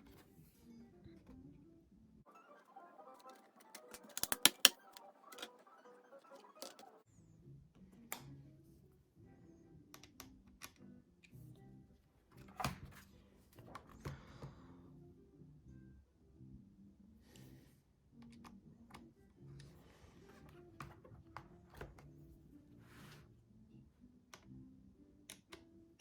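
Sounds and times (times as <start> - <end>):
background music: 0.0 - 26.0
laptop clicks and taps: 3.2 - 5.6.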